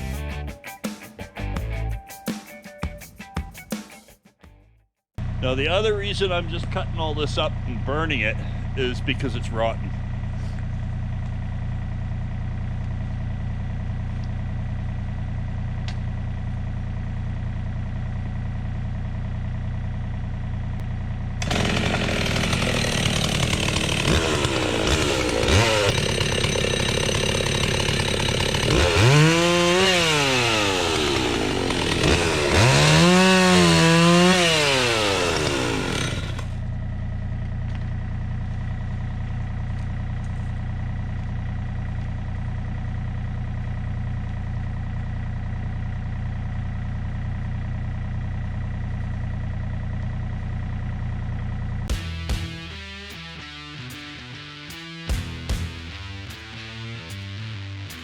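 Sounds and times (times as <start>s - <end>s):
engine idling: 5.2s - 58.0s
chainsaw cutting logs: 21.3s - 36.7s.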